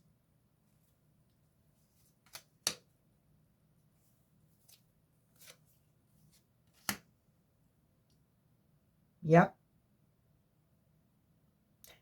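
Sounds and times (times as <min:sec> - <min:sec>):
cards rustling: 0:01.8 - 0:02.9, 0:04.6 - 0:07.1
cards snapping: 0:02.2 - 0:02.9, 0:06.7 - 0:07.1.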